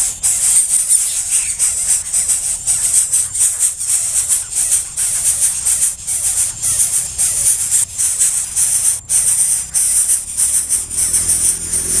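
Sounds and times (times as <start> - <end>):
rhythmic shaker-like hiss: 0.0 - 12.0.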